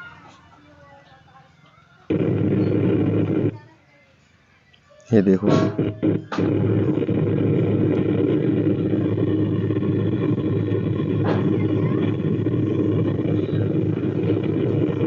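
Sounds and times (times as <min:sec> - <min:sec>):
steady hum: 0:02.0 - 0:03.7, 0:05.1 - 0:15.0
distorted speaker audio: 0:02.1 - 0:03.8, 0:05.1 - 0:15.0.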